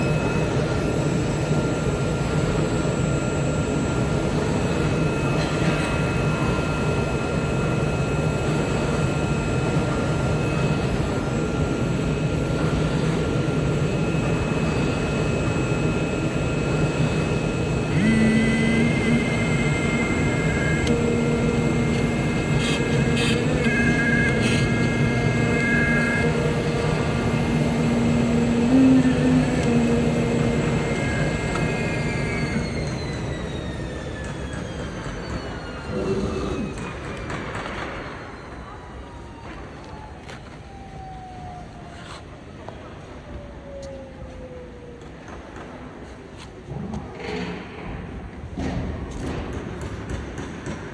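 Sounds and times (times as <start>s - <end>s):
cutting machine drone and whines: 0.0s - 50.9s.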